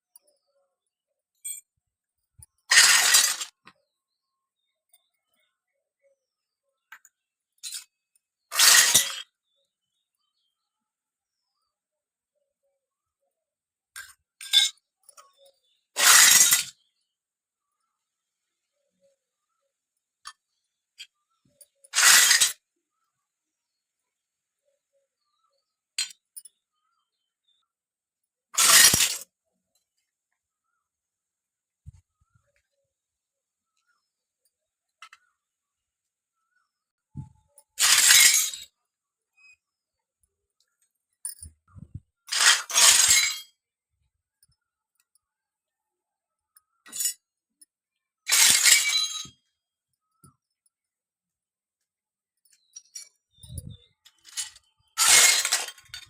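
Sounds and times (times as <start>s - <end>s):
toy kitchen pieces clinking: 2.4s - 3.8s, 6.9s - 9.3s, 14.0s - 16.9s, 21.0s - 22.6s, 26.0s - 26.6s, 28.6s - 29.3s, 37.8s - 38.7s, 41.2s - 43.6s, 46.6s - 47.3s, 48.3s - 49.4s, 52.5s - 56.0s.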